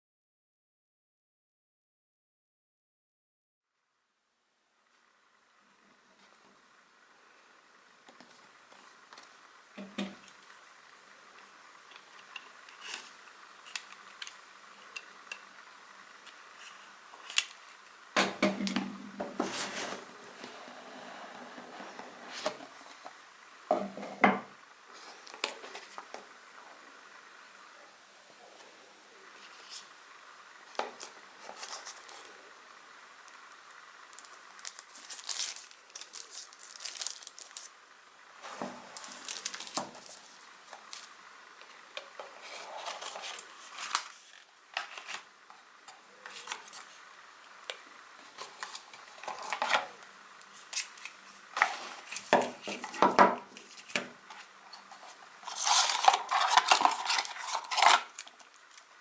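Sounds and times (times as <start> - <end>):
cardboard and plastic rustling: 8.0 - 26.6, 28.6 - 59.0
plastic wrap crinkling: 34.1 - 59.0.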